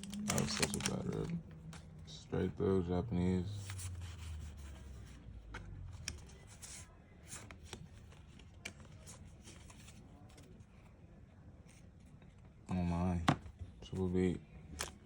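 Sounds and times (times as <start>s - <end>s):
trading cards being handled: 0.0s - 2.2s, 3.5s - 10.9s.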